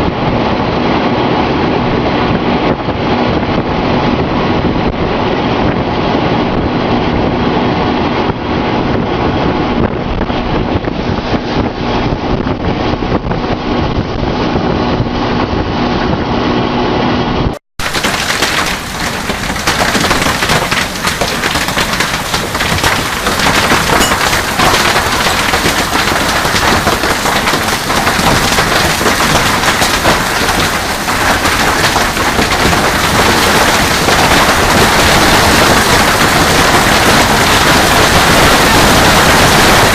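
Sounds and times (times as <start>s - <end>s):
heavy rain: 17.8s - 39.9s.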